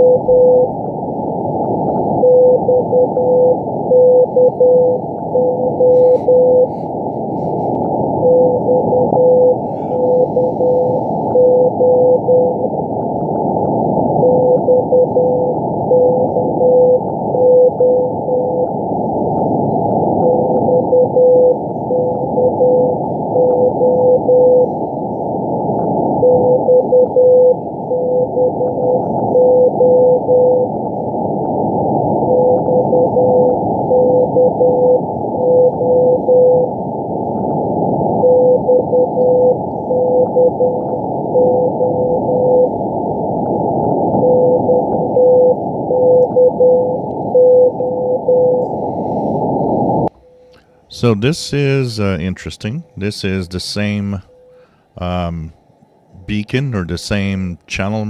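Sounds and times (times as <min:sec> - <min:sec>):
morse code beeps: 0:00.0 - 0:00.8, 0:02.2 - 0:07.1, 0:08.0 - 0:12.7, 0:14.1 - 0:18.8, 0:20.2 - 0:24.8, 0:26.2 - 0:30.8, 0:32.2 - 0:36.7, 0:38.2 - 0:42.8, 0:44.1 - 0:48.8, 0:50.0 - 0:55.5
muffled radio band hiss: 0:00.0 - 0:58.0.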